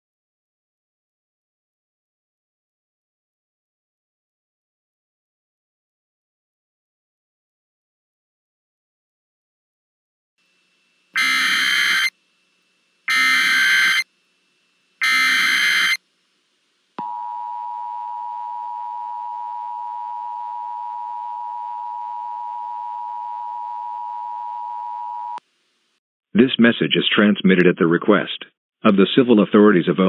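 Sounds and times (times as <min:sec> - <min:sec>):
harsh digital header bursts: 0:11.2 - 0:12.1, 0:13.1 - 0:14.0, 0:15.0 - 0:16.0
two-tone attention signal: 0:11.2 - 0:12.1, 0:13.1 - 0:14.0, 0:15.0 - 0:16.0.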